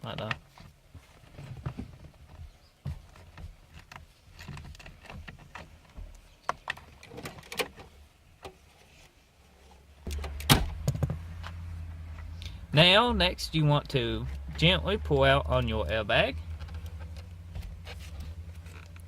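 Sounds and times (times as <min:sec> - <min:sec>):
low rumble: 0:10.1 - 0:19.0.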